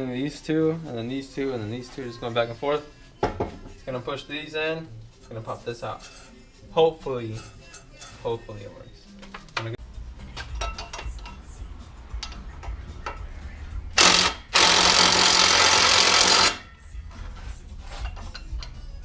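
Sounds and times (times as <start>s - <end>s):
impact wrench running: 14.0s - 16.6s.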